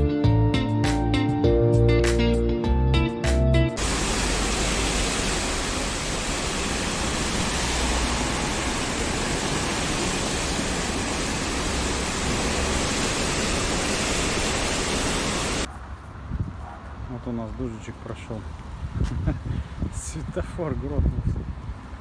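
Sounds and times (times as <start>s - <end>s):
heavy rain downpour: 3.8s - 15.7s.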